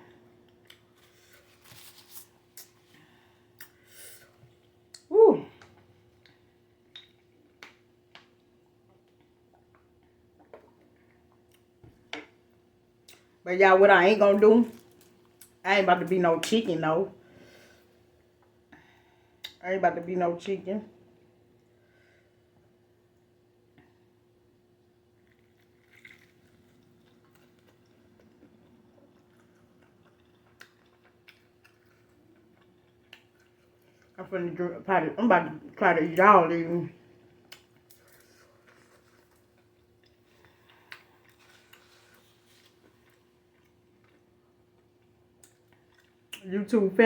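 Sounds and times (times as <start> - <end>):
faint steady hum: 0.0 - 47.0
faint chewing and mouth clicks: 0.4 - 12.4, 25.1 - 34.2, 37.2 - 46.5.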